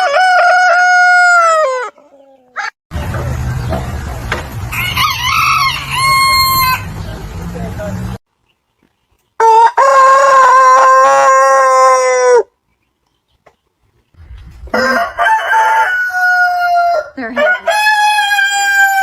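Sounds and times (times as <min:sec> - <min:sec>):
roosters crowing: 0:00.0 - 0:02.8, 0:04.6 - 0:07.1, 0:09.4 - 0:12.5, 0:14.2 - 0:19.0.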